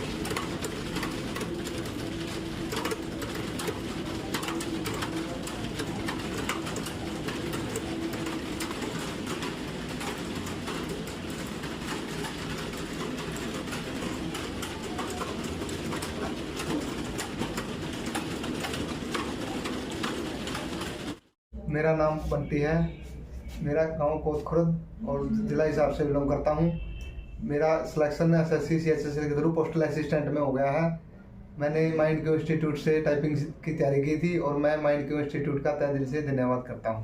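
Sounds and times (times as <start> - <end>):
keyboards typing clatter: 0.0 - 21.4.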